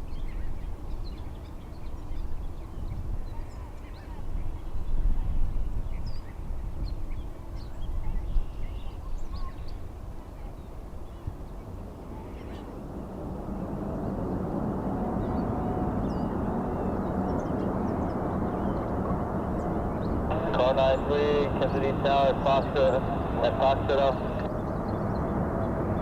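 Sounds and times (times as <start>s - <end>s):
gusty wind rumble: 0.0s - 26.0s
jet engines rushing: 12.7s - 26.0s.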